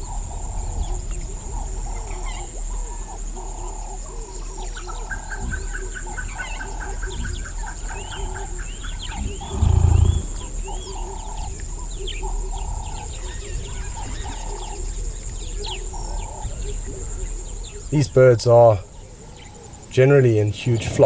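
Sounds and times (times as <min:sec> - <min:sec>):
high insect whine: 0:00.0 - 0:21.0
loud deep rumble: 0:09.0 - 0:10.8
animal repeating short call: 0:09.2 - 0:10.4.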